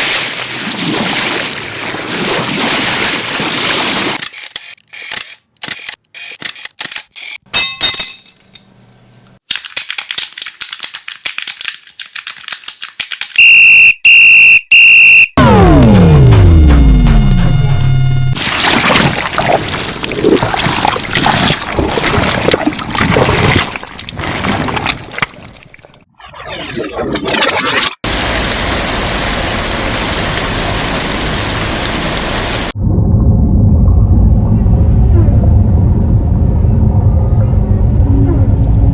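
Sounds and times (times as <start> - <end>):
rapid irregular clicking: 9.4 - 13.4
electronic alarm beeps: 13.4 - 18.4
tone sliding down in pitch: 14.8 - 18.4, 36.2 - 38.9
low rumble: 15.4 - 18.4, 32.8 - 38.9.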